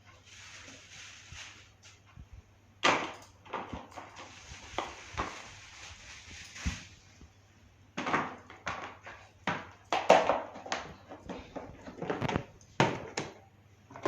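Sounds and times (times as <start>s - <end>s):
vegetables rustling: 4.0s - 7.1s.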